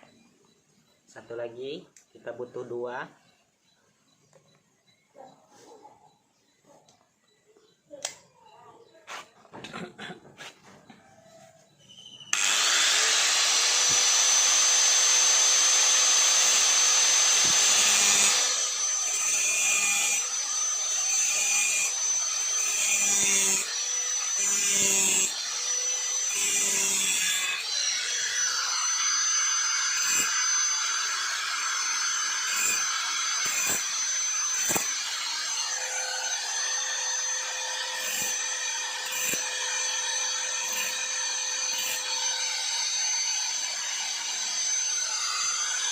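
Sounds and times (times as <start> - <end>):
power tool high whine: 11.9 - 45.9.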